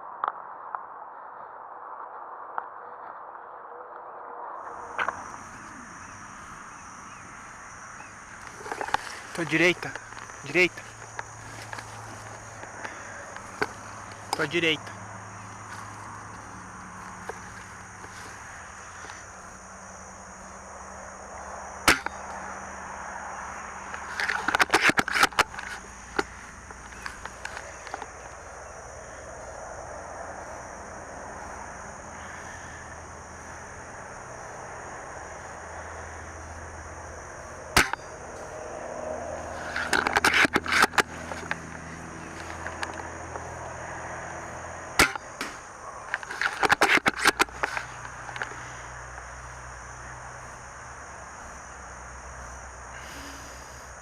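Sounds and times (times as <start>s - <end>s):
airsoft gun single shots: 45.0s - 45.6s.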